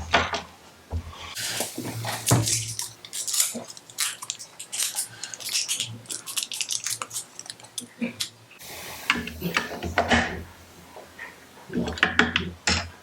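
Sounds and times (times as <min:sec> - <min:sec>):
batteries clicking into plastic tray: 0:02.3 - 0:08.3.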